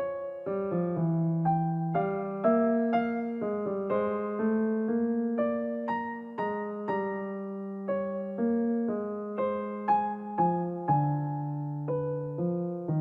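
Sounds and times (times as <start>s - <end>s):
gentle piano melody: 0.0s - 13.0s.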